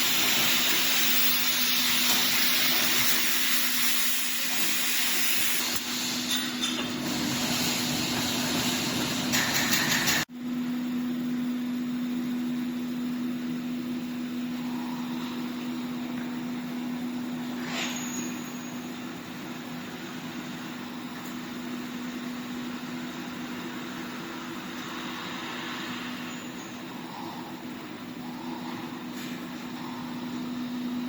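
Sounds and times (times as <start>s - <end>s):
welding machine humming and hissing: 0.0s - 10.3s.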